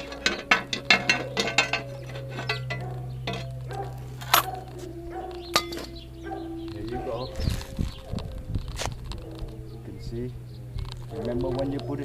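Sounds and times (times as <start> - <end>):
metal parts clinking and clicking: 0.0 - 6.0.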